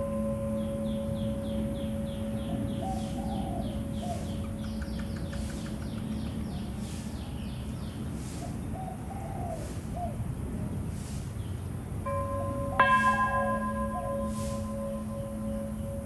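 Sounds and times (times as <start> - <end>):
temple bell humming: 0.0 - 5.6, 12.1 - 16.0
bird chirping: 0.0 - 8.1
lower warbling bird calls: 0.0 - 10.2.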